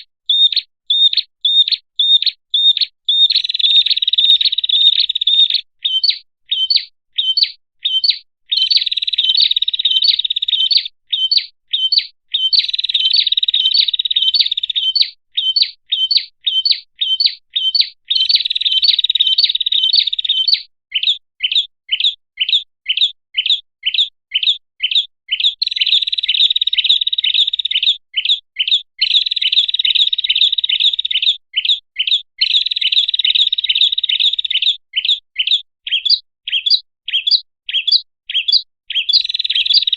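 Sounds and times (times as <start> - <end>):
songbird high chirps: 0.0 - 39.9
songbird buzzy trills: 0.3 - 21.6.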